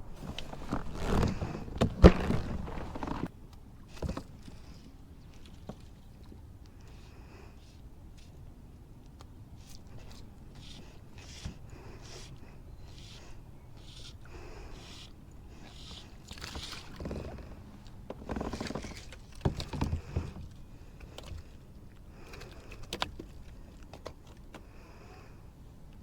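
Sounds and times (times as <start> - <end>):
gear knocking against kayak: 0.2 - 3.3, 16.6 - 20.5.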